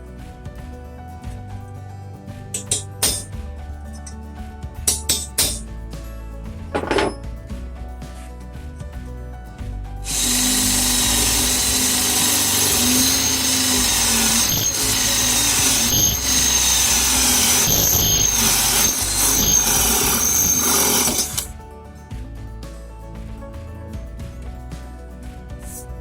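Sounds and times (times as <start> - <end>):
cordless drill boring under load: 10.1 - 21.5.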